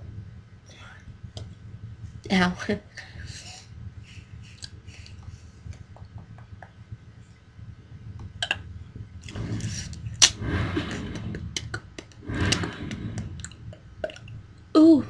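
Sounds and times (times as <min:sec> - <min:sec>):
breathy noise: 0:09.2 - 0:14.3.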